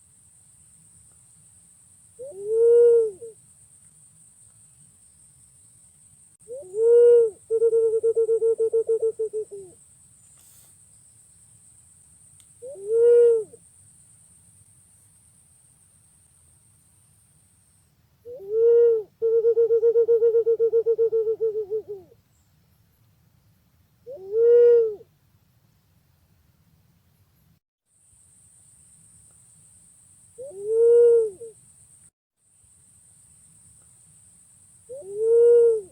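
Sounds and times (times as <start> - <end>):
pigeon hooting coos: 2.2 - 3.4, 6.5 - 9.8, 12.6 - 13.6, 18.3 - 22.2, 24.1 - 25.1, 30.4 - 31.6, 34.9 - 35.9.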